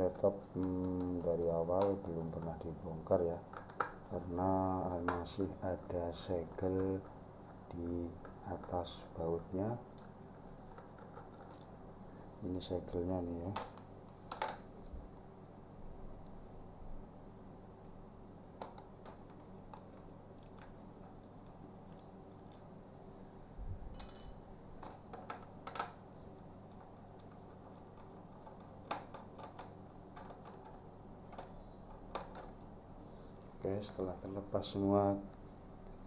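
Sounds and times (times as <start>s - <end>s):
screwdriver clicking on plastic: 27.2s - 32.6s.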